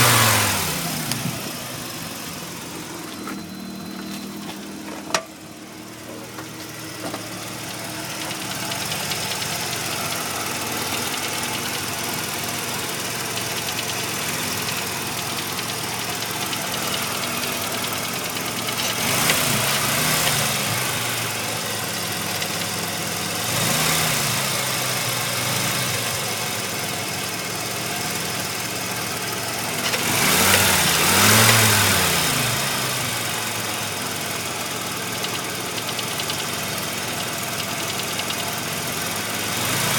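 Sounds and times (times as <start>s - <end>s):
engine revving: 0.0s - 39.9s
rotary engine idling with knock: 0.0s - 39.9s.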